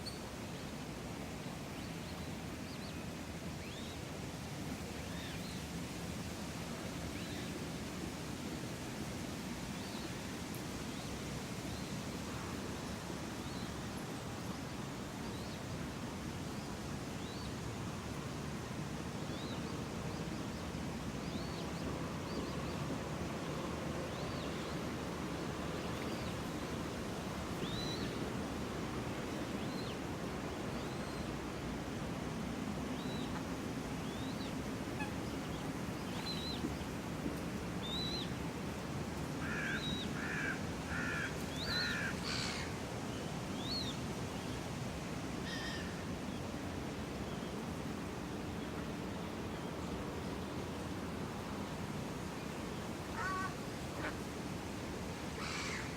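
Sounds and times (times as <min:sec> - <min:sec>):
crow cawing: 0:39.4 - 0:42.7, 0:53.2 - 0:53.6, 0:55.4 - 0:55.9.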